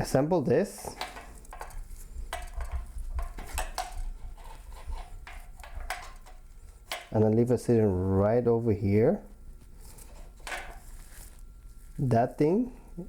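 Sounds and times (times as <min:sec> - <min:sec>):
metal parts clicking and clinking: 0:00.8 - 0:07.2, 0:09.9 - 0:10.9.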